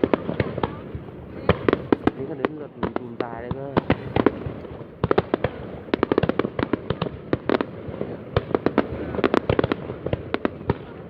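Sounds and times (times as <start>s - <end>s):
distant fireworks bursts: 0.0s - 11.0s
fireworks bangs and cracks: 0.0s - 11.0s.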